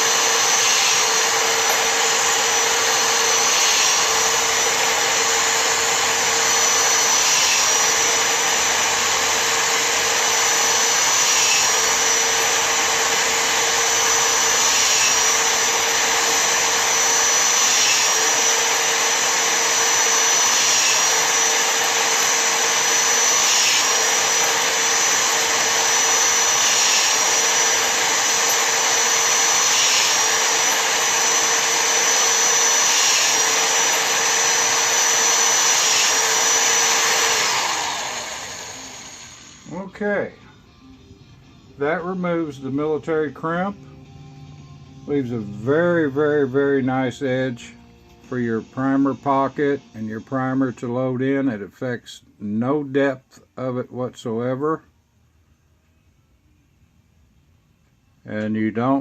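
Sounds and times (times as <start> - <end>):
electric drill running: 0.0 - 40.0.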